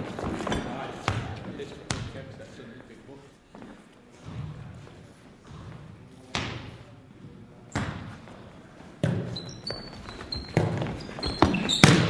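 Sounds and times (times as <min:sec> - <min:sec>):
ball kick thuds with echo: 0:05.4 - 0:06.9, 0:07.7 - 0:08.3, 0:09.0 - 0:09.4, 0:10.5 - 0:12.0
short high squeaks: 0:09.3 - 0:12.0.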